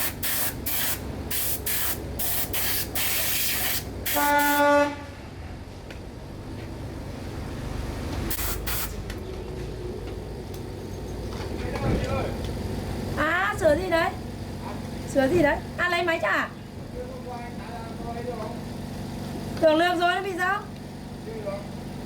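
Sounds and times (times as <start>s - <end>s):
spray hissing bursts: 0.0s - 4.6s, 8.3s - 9.0s.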